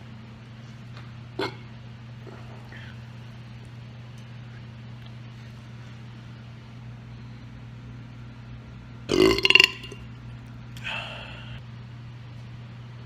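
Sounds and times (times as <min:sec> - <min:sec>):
steady low hum: 0:00.0 - 0:13.0
person belching loudly: 0:09.1 - 0:10.0.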